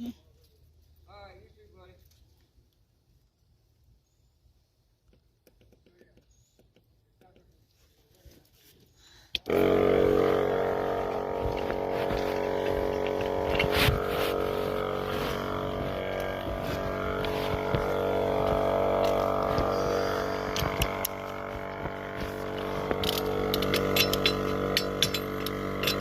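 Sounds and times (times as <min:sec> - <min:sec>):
vehicle engine running: 0:09.4 - 0:26.0.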